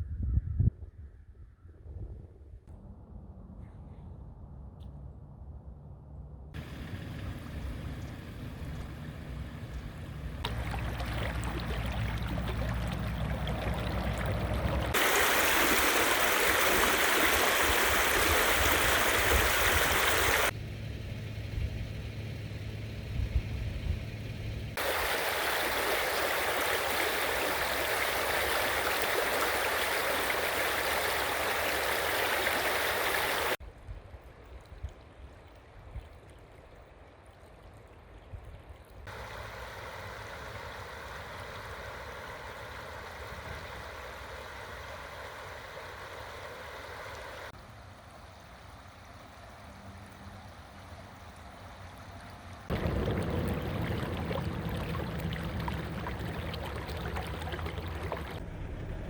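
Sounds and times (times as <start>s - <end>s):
low steady hum: 2.6s - 17.4s, 18.0s - 29.1s, 33.6s - 59.0s
floodwater rushing: 6.6s - 20.6s, 24.7s - 33.6s, 39.1s - 47.6s, 52.6s - 59.0s.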